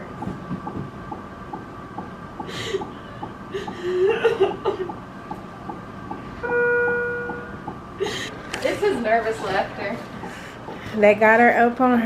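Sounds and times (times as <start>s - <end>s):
steady electronic beep: 5.7s - 7.8s.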